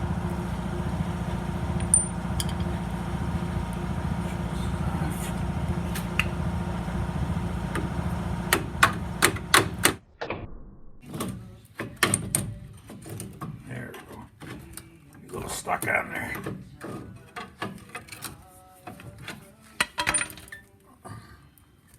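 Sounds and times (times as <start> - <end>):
power tool rattling: 0.0 - 10.0.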